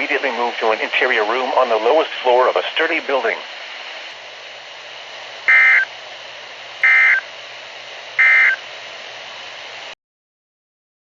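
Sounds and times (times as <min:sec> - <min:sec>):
static hiss: 0:00.0 - 0:10.0
two-tone digital data bursts: 0:05.5 - 0:05.9, 0:06.8 - 0:07.2, 0:08.2 - 0:08.6.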